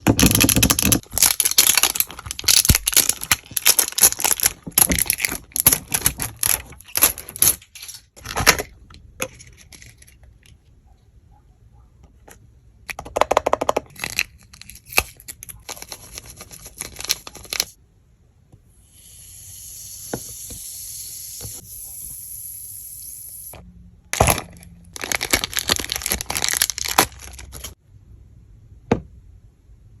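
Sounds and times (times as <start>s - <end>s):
plastic and cardboard tearing: 0.1s - 7.6s, 25.0s - 27.8s.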